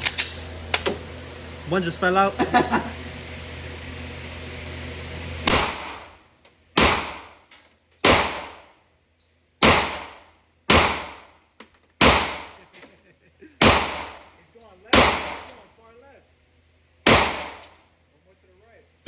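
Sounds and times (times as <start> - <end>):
pistol shots with echo: 8.0 - 8.6, 9.6 - 11.2, 12.0 - 12.5, 13.6 - 14.2, 14.9 - 15.5, 17.1 - 17.6.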